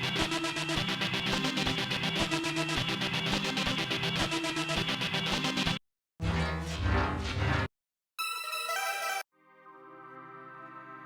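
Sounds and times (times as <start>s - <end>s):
electronic music with fast pulse: 0.0s - 5.8s.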